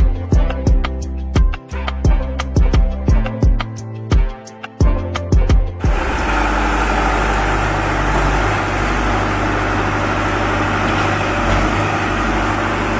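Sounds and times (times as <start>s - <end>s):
heavy engine running: 5.8s - 12.9s.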